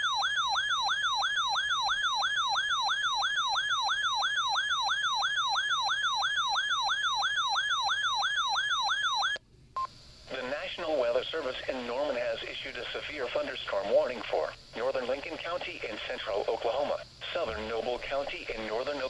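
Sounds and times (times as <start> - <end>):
electronic alert siren: 0.0 - 9.4.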